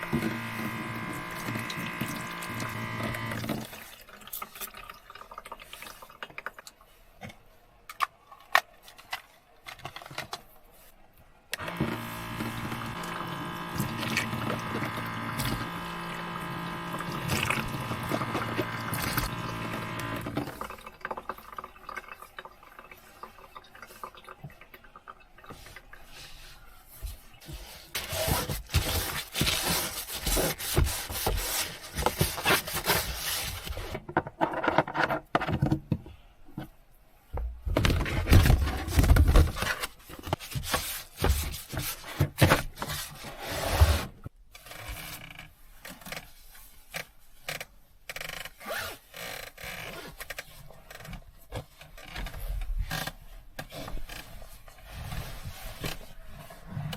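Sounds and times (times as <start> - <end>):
small electric motor buzzing: 0.0 - 3.6, 11.6 - 20.4
drips: 16.3 - 26.1.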